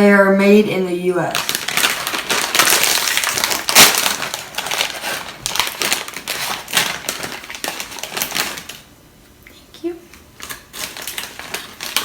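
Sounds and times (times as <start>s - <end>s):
crisps crunching: 1.2s - 8.9s, 10.1s - 12.0s.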